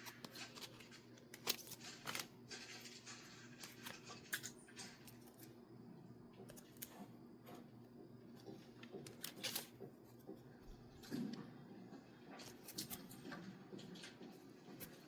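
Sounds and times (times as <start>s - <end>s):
paper and plastic packaging rustling: 0.0s - 5.6s, 8.4s - 10.2s
low steady hum: 0.0s - 15.0s.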